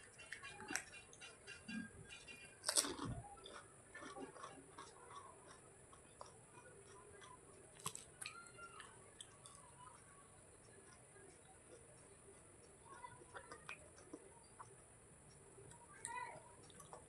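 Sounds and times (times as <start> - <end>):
person chewing food: 0.2 - 17.0.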